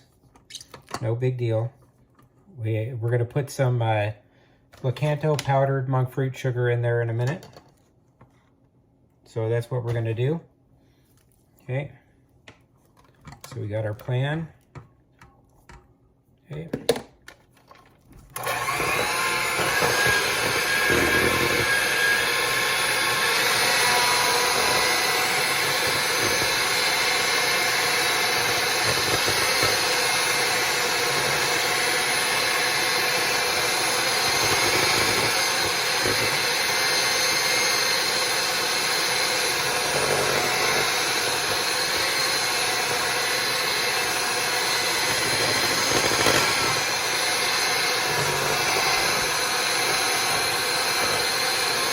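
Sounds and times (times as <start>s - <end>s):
electric hand mixer running: 18.4s - 51.9s.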